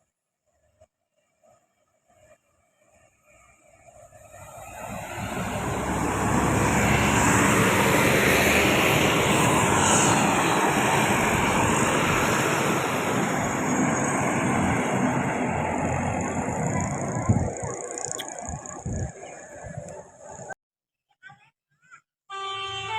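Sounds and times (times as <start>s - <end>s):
bus engine: 2.9s - 20.6s.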